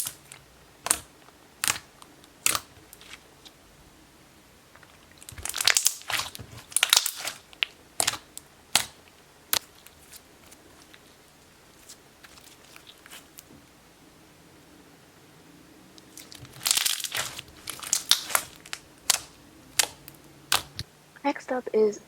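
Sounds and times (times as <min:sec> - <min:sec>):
slime squished by hand crackling: 0:00.0 - 0:03.6, 0:04.8 - 0:13.5, 0:16.0 - 0:20.9
sharp slime pops: 0:00.8 - 0:03.2, 0:05.3 - 0:09.7, 0:16.1 - 0:20.9.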